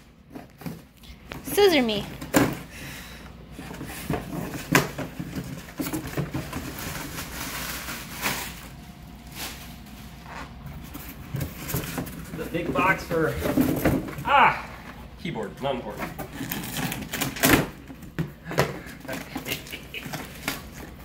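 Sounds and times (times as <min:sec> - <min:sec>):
cardboard rustling and scraping: 0:03.6 - 0:14.2, 0:15.9 - 0:18.2.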